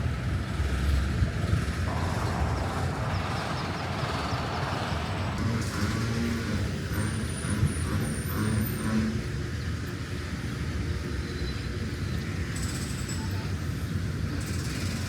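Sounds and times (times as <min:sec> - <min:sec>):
engine hum: 0:00.0 - 0:15.0
traffic engines rumbling: 0:00.0 - 0:15.0.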